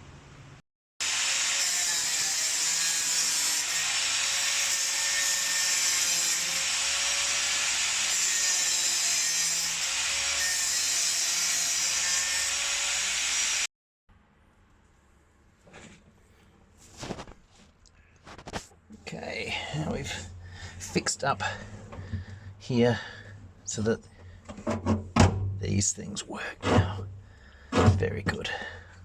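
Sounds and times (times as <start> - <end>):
power tool grinding metal: 1.0 - 13.7.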